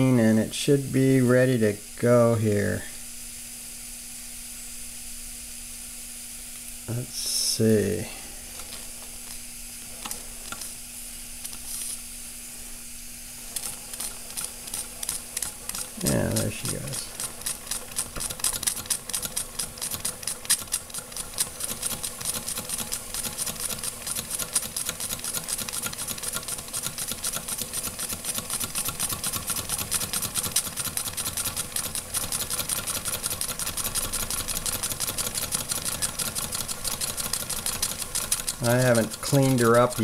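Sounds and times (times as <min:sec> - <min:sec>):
toy steam engine clattering: 0:13.5 - 0:40.0.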